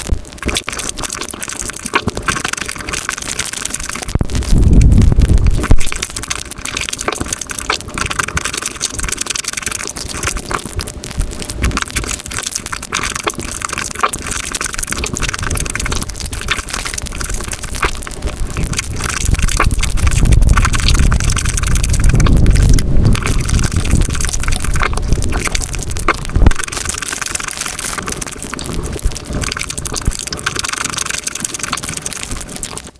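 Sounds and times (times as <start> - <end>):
crunching and chewing food: 0.0 - 32.9
low rumble: 4.1 - 6.3, 15.6 - 27.7.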